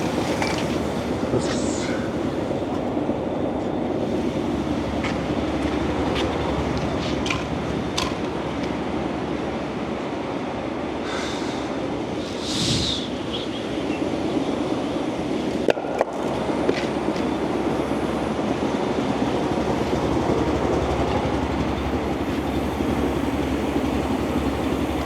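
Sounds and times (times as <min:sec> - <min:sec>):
heavy machinery rumble: 0:00.0 - 0:25.0
light metallic clicks and clanks: 0:05.0 - 0:08.8.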